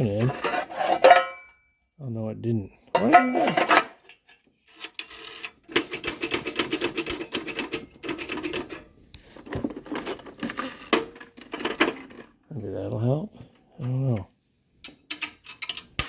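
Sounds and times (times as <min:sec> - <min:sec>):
faint metallic ring: 0:01.1 - 0:01.9.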